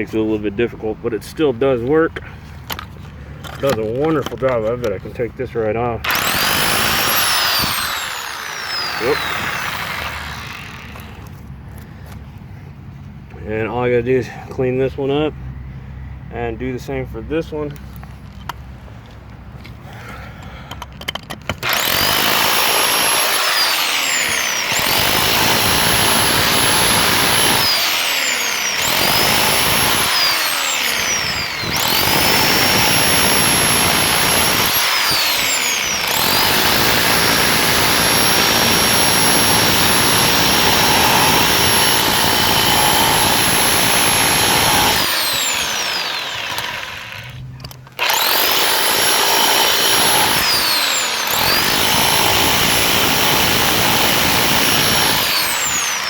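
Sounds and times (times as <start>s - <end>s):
rotary hammer chiselling concrete: 6.0s - 11.2s, 21.5s - 47.4s, 48.0s - 56.0s.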